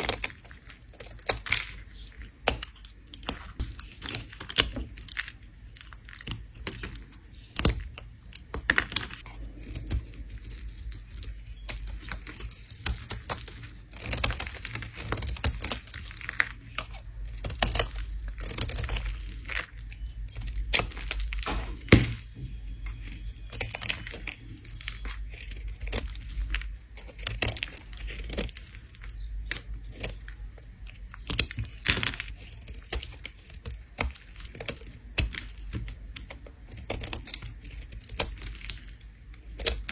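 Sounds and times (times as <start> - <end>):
blade scraping soap: 22.6 - 39.9.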